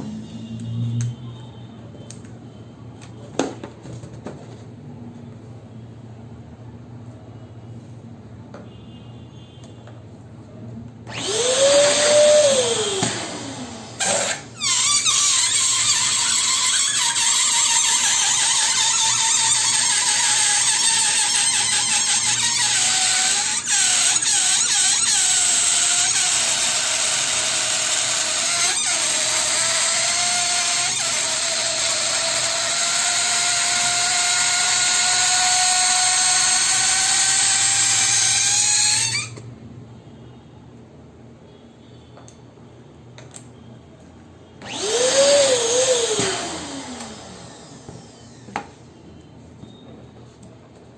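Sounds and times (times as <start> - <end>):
electric balloon pump running: 11.1 - 39.4, 44.6 - 48.7.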